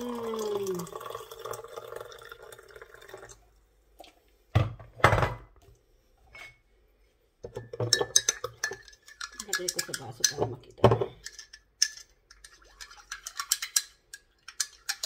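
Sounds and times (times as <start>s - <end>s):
water pouring into a cup: 0.0s - 4.1s
spoon clinking against glass: 7.8s - 10.4s.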